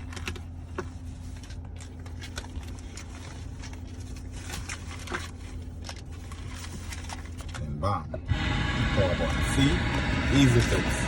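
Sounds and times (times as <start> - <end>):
car cabin hum: 7.6 - 11.0.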